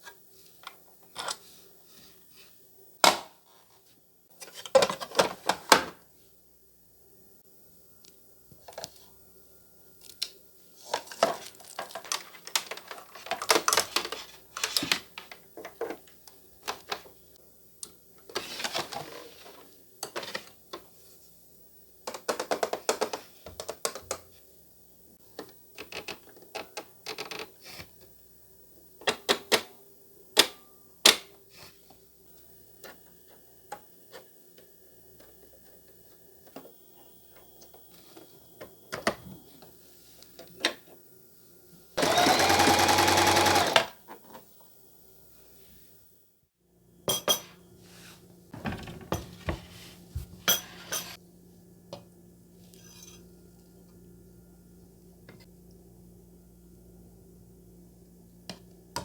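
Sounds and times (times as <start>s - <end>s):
faint steady hum: 43.2s - 59.0s
rustling or scraping: 47.8s - 51.2s.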